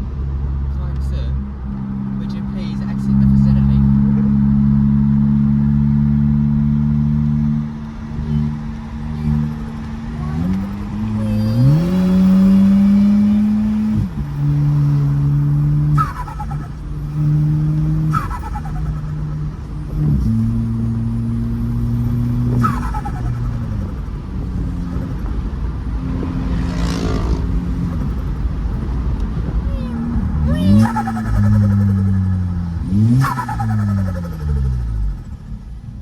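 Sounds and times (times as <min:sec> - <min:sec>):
car engine accelerating through gears: 0:01.5 - 0:36.0
turbo flutter chirps: 0:16.0 - 0:17.5, 0:18.1 - 0:20.0, 0:22.2 - 0:24.2, 0:30.4 - 0:35.5.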